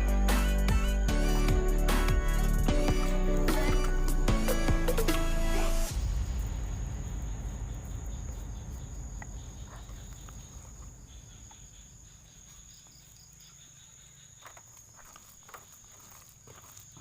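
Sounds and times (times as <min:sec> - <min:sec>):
low rumble: 0:02.7 - 0:11.5
insect trilling: 0:07.0 - 0:17.0.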